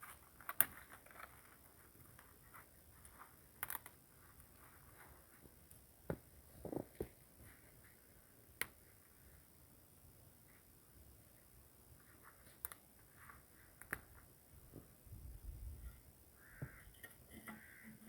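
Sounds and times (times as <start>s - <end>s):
sharp clicks and snaps: 3.5s - 4.0s, 8.6s - 8.8s, 12.5s - 12.9s, 13.8s - 14.1s.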